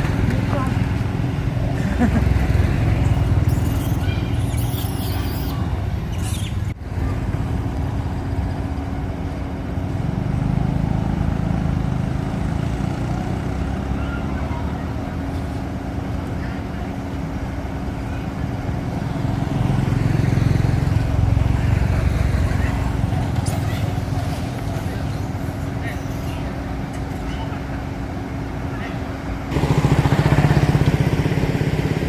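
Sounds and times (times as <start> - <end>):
constant hum: 0.0 - 32.0
engine rumbling: 0.0 - 32.0.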